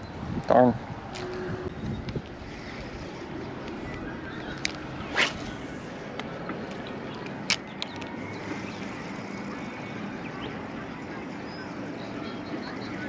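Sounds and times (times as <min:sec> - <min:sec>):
wind and water hiss: 0:00.0 - 0:10.2.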